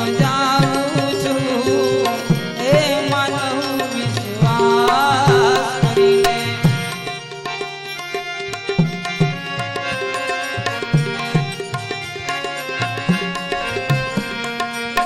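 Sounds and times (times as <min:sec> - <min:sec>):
ornamented melody line: 0:00.0 - 0:15.0
tabla rhythm: 0:00.0 - 0:15.0.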